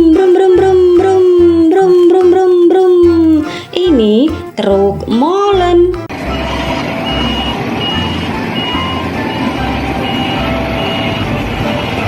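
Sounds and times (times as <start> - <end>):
truck engine rumble: 0.0 - 12.0
reversing alarm beeping: 6.2 - 12.0.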